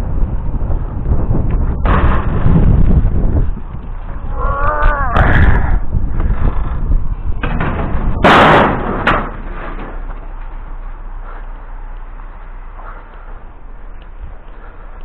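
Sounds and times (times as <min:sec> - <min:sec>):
steady low rumble: 0:00.0 - 0:15.0
loud slam: 0:07.4 - 0:10.0.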